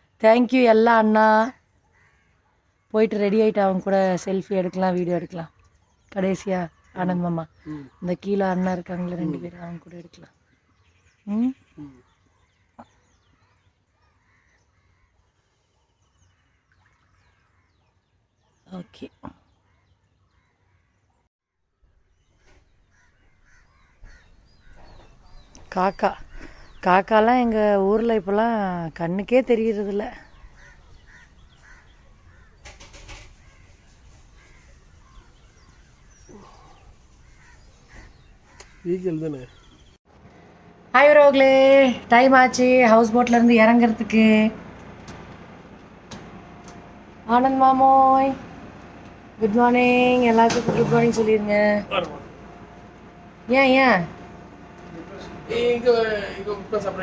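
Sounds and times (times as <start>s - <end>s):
crows cawing faintly: 1.5s - 3.0s, 11.8s - 18.0s, 22.4s - 25.2s, 30.2s - 40.4s
crow caw: 1.9s - 2.4s, 22.9s - 24.9s, 30.6s - 32.6s, 37.2s - 39.0s
faint bird calls: 10.4s - 21.3s, 22.1s - 26.9s, 30.1s - 40.0s.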